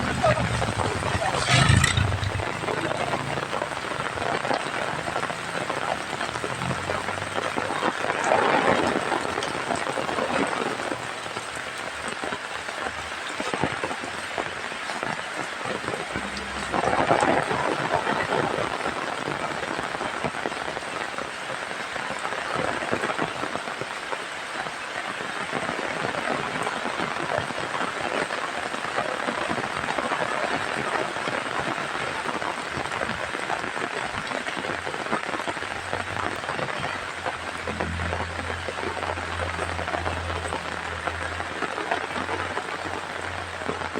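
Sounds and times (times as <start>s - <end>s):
heavy rain falling: 0.0s - 43.9s.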